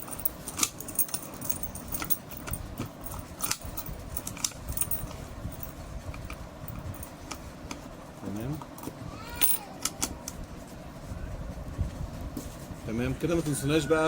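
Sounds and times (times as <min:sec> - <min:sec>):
keys rattling on ring: 0:00.0 - 0:07.4.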